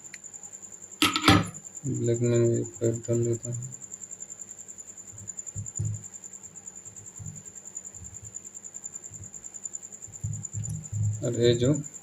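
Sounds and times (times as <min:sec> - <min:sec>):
soft low bumps from hands: 0:05.6 - 0:06.0, 0:10.1 - 0:11.2.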